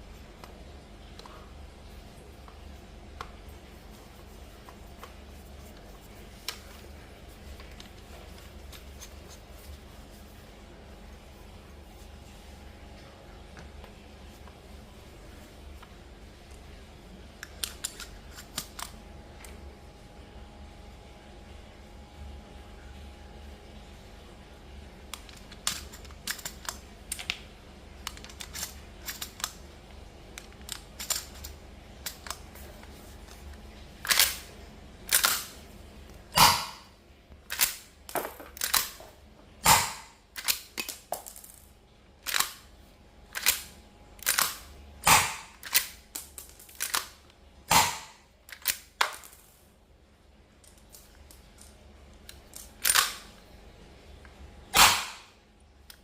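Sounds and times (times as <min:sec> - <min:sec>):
airsoft rifle shots: 0:36.4 - 0:36.8, 0:39.6 - 0:40.1, 0:45.0 - 0:45.6, 0:47.7 - 0:48.2, 0:54.8 - 0:55.3.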